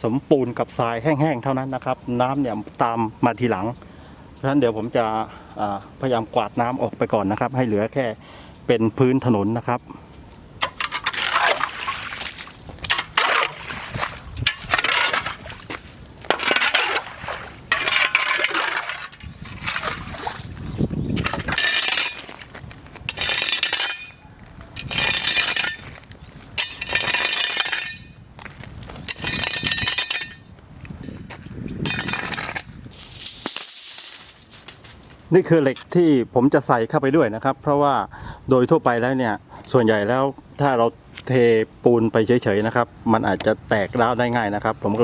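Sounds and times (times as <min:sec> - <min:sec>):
broom sweeping water: 0:10.8 - 0:20.7.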